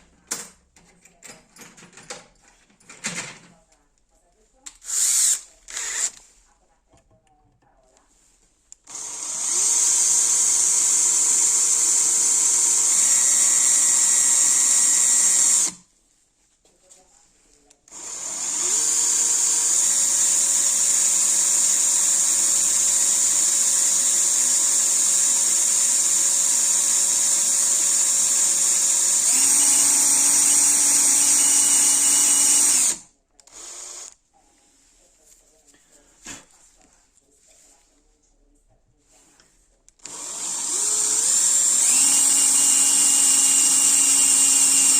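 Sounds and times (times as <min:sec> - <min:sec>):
electric drill running: 0:04.8 - 0:06.2, 0:08.8 - 0:15.8, 0:17.9 - 0:34.2, 0:40.0 - 0:44.9.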